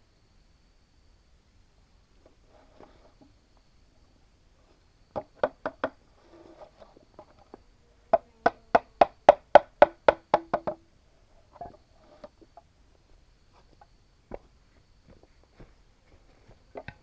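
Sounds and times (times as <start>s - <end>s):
hammering on bamboo: 5.1s - 6.0s, 8.1s - 10.8s.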